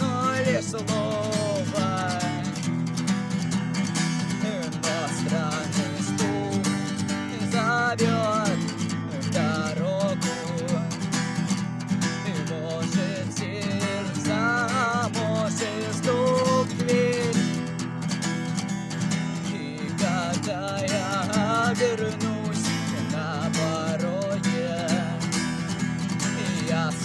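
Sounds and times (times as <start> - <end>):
acoustic guitar strumming chords: 0.0 - 27.0.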